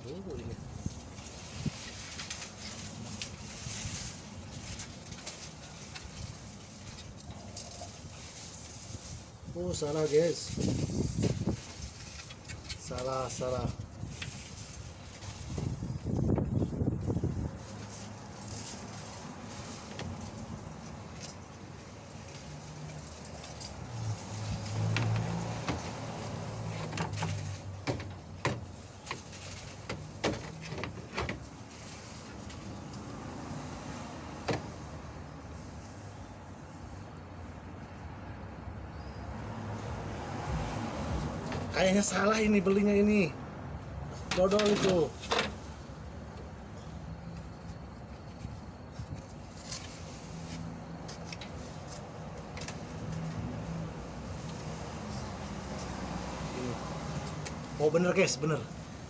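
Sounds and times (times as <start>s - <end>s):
clicks and knocks of fan parts: 24.6s - 31.6s, 44.1s - 45.6s, 51.0s - 53.5s.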